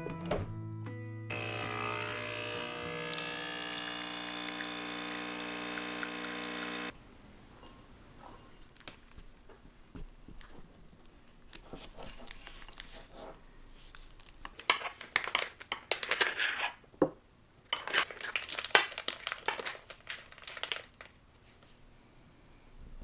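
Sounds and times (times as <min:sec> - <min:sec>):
crisp crinkling and crackling: 0:17.8 - 0:21.6.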